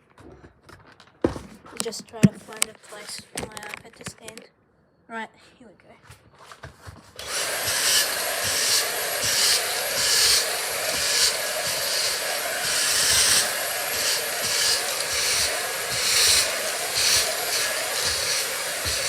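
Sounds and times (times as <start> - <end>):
vacuum cleaner running: 7.2 - 19.0
vacuum nozzle hissing over mat: 7.2 - 19.0.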